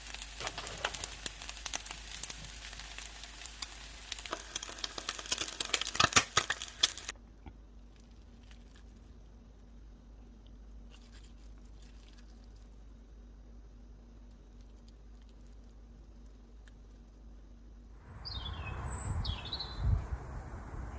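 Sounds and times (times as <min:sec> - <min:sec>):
rice sizzling in a frying pan: 0:00.0 - 0:07.2
faint steady hum: 0:00.0 - 0:20.9.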